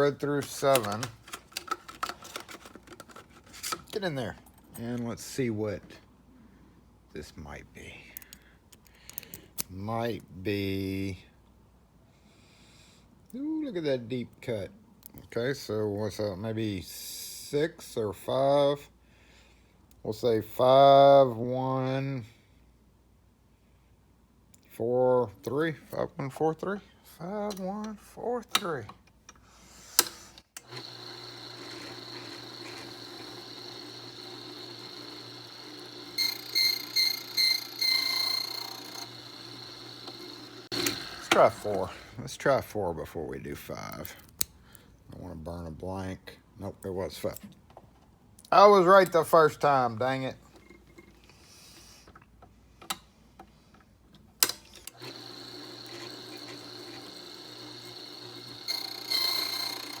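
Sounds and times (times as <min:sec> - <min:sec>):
machine motor running: 0:30.6 - 0:41.8, 0:54.9 - 1:00.0.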